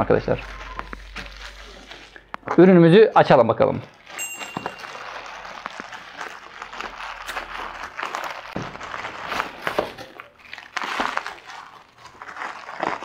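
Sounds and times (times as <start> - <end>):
plastic bag crinkling and tearing: 0.0 - 13.0.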